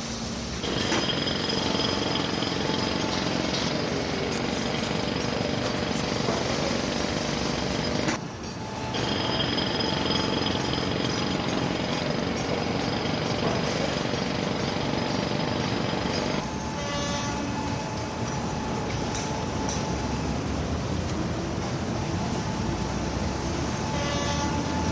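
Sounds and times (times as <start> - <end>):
jackhammer hammering: 0.6 - 8.2, 9.0 - 16.4
machine hum: 0.6 - 21.1.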